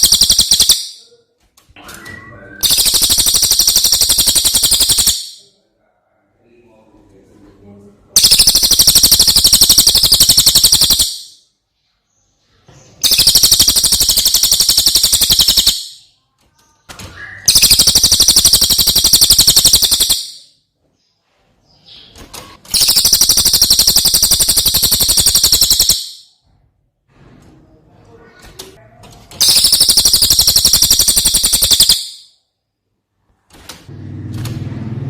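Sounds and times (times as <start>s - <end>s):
bird singing high-pitched trills: 0.0s - 1.0s, 2.1s - 5.4s, 8.2s - 11.4s, 13.0s - 16.1s, 17.2s - 20.5s, 22.7s - 26.3s, 29.4s - 32.3s.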